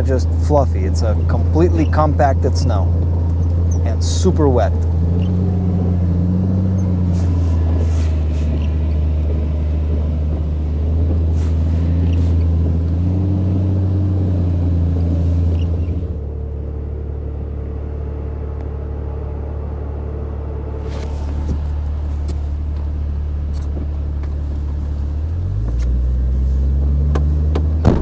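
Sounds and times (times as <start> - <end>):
off-road vehicle engine droning: 0.0 - 28.0.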